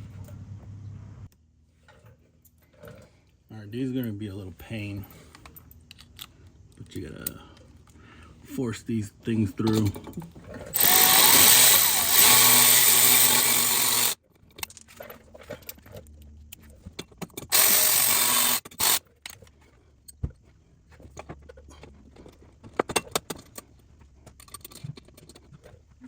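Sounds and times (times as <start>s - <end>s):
cordless drill running: 10.7s - 14.2s, 17.5s - 19.0s.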